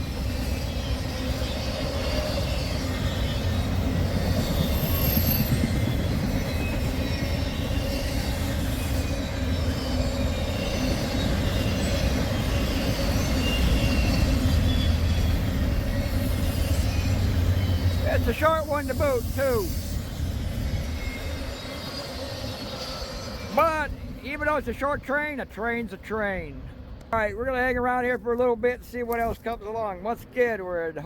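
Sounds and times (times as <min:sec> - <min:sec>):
high wheel squeals: 0:00.0 - 0:23.6
train wheels rumbling on rails: 0:00.0 - 0:25.6.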